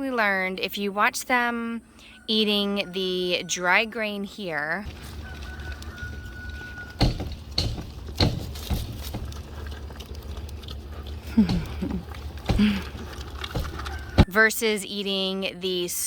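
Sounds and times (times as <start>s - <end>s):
piglets crunching dry grain: 4.8s - 14.3s.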